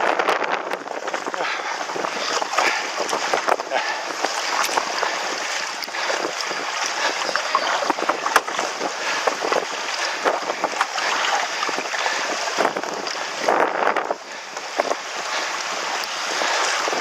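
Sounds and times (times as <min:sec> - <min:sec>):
rush of water and wind: 0:00.0 - 0:17.0
wind buffeting microphone: 0:00.0 - 0:17.0
board knocking and splashing: 0:00.8 - 0:13.2.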